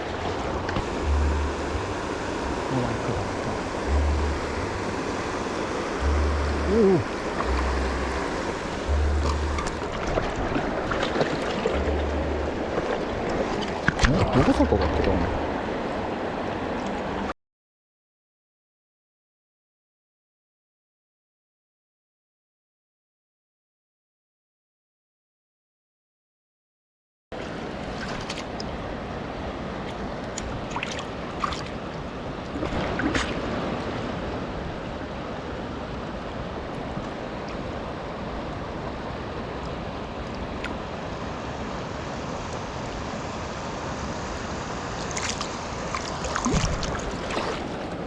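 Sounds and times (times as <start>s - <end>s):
knocks and splashes: 0.0s - 1.2s, 8.5s - 15.2s, 27.4s - 28.7s, 29.8s - 31.8s, 32.5s - 34.1s, 45.0s - 48.0s
river current rushing: 0.0s - 17.3s, 27.4s - 48.0s.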